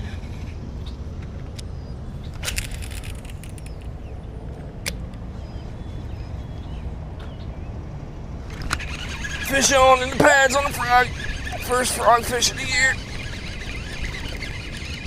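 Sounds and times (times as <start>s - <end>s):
low outdoor rumble: 0.0s - 15.0s
sharp clicks: 2.3s - 4.0s, 8.5s - 15.0s
bird chirps: 8.5s - 15.0s.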